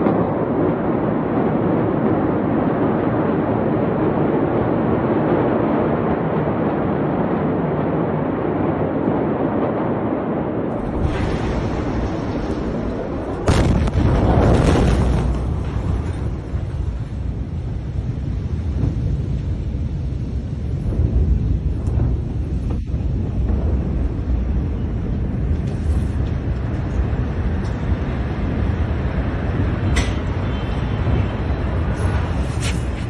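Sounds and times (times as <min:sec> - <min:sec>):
deep rumble: 0:00.0 - 0:33.0
deep explosion blast: 0:06.9 - 0:19.3
rushing roar: 0:10.7 - 0:16.8.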